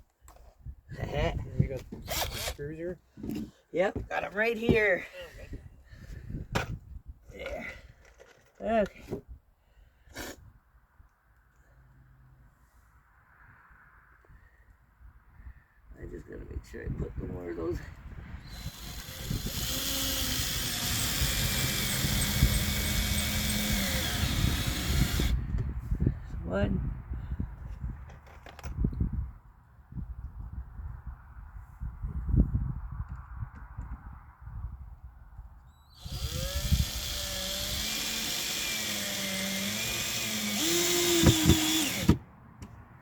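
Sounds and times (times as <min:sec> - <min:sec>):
power drill driving screw into wood: 0:02.0 - 0:02.6, 0:10.1 - 0:10.4, 0:18.4 - 0:25.4, 0:35.8 - 0:42.2.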